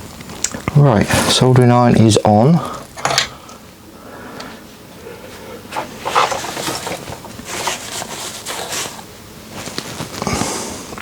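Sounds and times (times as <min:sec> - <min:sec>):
rustling and tool clicks: 0:02.9 - 0:03.3, 0:05.8 - 0:09.0.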